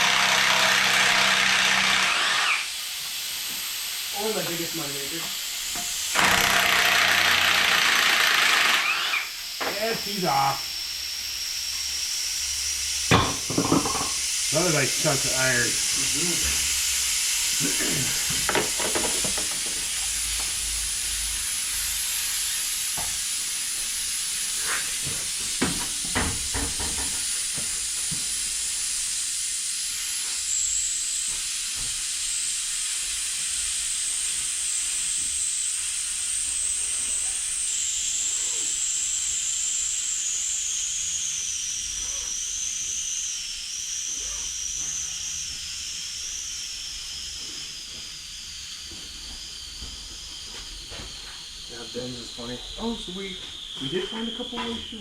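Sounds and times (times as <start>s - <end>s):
loud hiss with high whistle: 2.4s - 7.0s, 8.8s - 55.0s.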